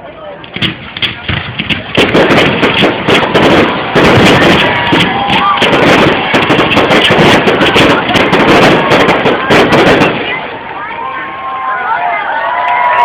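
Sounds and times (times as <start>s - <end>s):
fireworks bangs and crackling: 0.5s - 11.6s.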